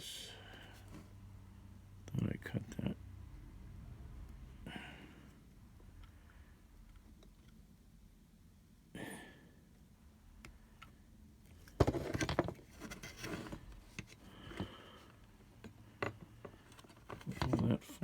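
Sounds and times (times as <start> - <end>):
knocks and rustles: 11.6 - 14.8
scrape of small parts: 11.6 - 15.1.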